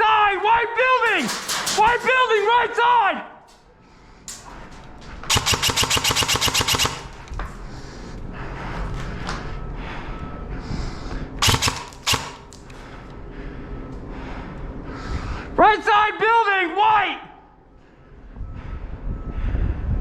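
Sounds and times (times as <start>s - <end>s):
airsoft gun firing: 5.3s - 7.3s, 11.4s - 12.6s.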